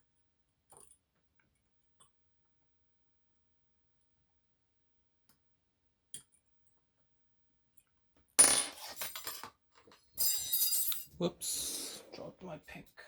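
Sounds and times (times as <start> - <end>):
metal pick clattering on hard surface: 8.4 - 11.2.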